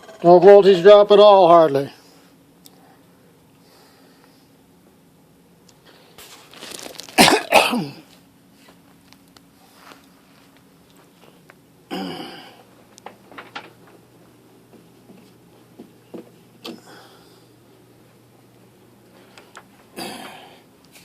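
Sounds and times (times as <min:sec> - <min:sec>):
faint steady hum: 0:00.0 - 0:21.0
person clearing throat: 0:07.2 - 0:08.1, 0:11.9 - 0:12.6, 0:20.0 - 0:20.6
person coughing: 0:07.2 - 0:08.1, 0:11.9 - 0:12.6, 0:20.0 - 0:20.6.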